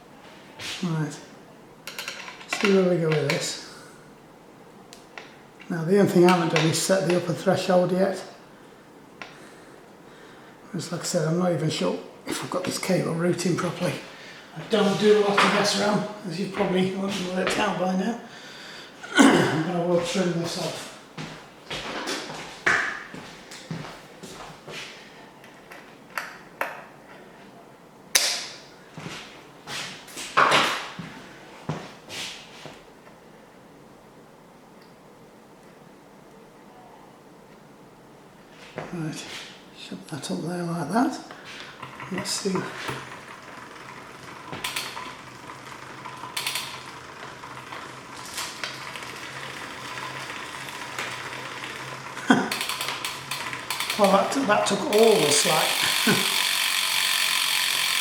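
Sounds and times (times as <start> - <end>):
bicycle freehub buzzing: 12.3 - 21.3, 41.3 - 58.0
metallic clicks and taps on bicycle gears: 44.6 - 45.1, 46.2 - 46.9, 49.9 - 58.0.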